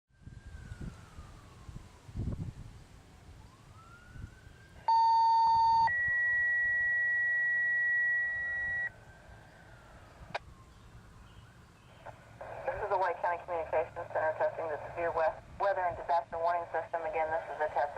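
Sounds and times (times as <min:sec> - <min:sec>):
faint warning siren: 0:00.1 - 0:17.9
radio paging tones: 0:04.9 - 0:08.9, 0:12.0 - 0:17.9.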